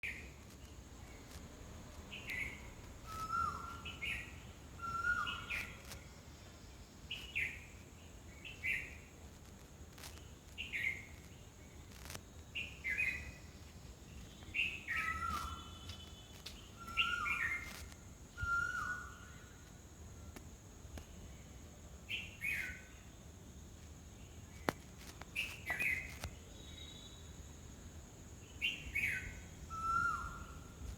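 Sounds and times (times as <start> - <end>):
bird calling falling notes: 2.2 - 5.9.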